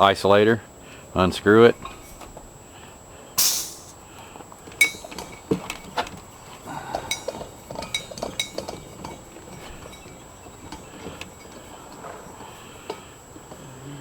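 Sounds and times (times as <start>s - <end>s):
small metal parts clinking: 4.8s - 6.0s, 7.0s - 11.7s.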